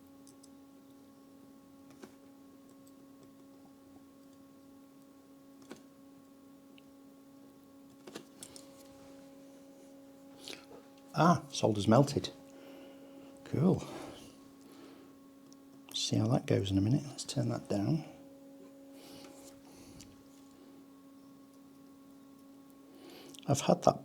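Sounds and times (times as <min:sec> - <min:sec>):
faint electrical hum: 0:00.0 - 0:24.0
soft clicks of small parts: 0:00.2 - 0:01.0, 0:04.2 - 0:06.9, 0:07.9 - 0:08.9.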